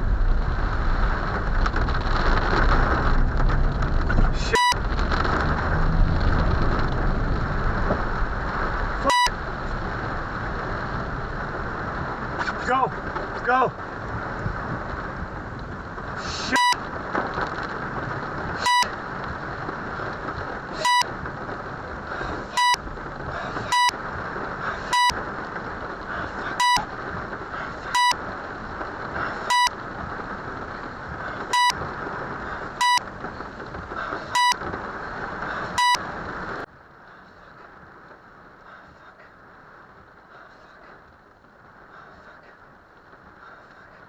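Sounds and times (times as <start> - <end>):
rain and water rushing: 0.0 - 44.0
censor bleeps: 4.5 - 4.8, 9.0 - 9.4, 16.5 - 16.8, 18.6 - 18.9, 20.8 - 21.1, 22.5 - 22.8, 23.7 - 23.9, 24.9 - 25.2, 26.6 - 26.9, 28.0 - 28.2, 29.5 - 29.7, 31.5 - 31.8, 32.8 - 33.0, 34.4 - 34.6, 35.8 - 36.0.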